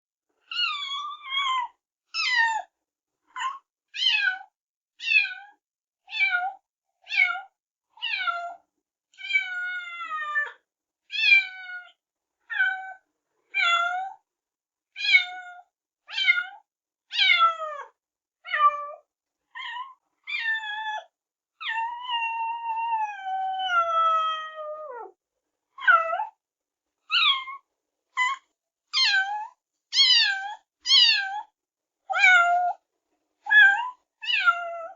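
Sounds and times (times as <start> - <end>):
kitten meowing: 27.1 - 27.6, 29.0 - 31.5, 33.5 - 34.9.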